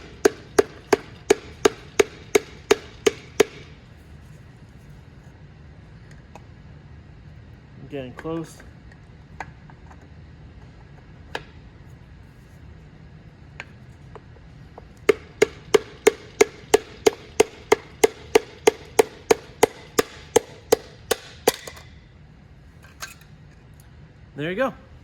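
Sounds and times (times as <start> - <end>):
hammer tapping on wooden block: 0.0 - 3.7, 15.1 - 21.8.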